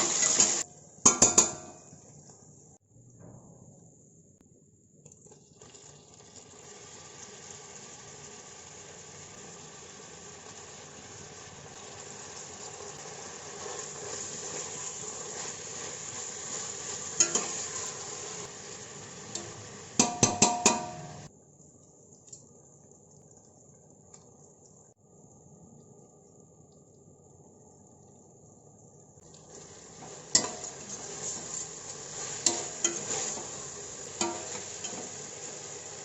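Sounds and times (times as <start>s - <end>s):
food sizzling in hot oil: 0.0s - 1.8s, 5.3s - 21.3s, 29.2s - 36.0s
metal spoon knocking on pot: 1.1s - 1.8s, 20.0s - 21.2s.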